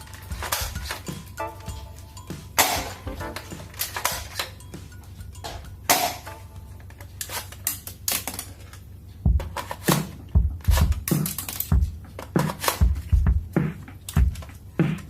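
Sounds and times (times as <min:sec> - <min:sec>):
background music: 0:00.0 - 0:07.0.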